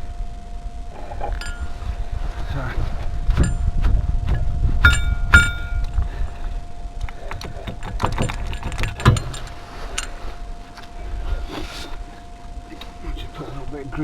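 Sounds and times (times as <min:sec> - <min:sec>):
faint steady tone: 0:00.0 - 0:14.0
metal tools clinking: 0:01.0 - 0:02.7, 0:03.3 - 0:06.4, 0:07.0 - 0:10.9.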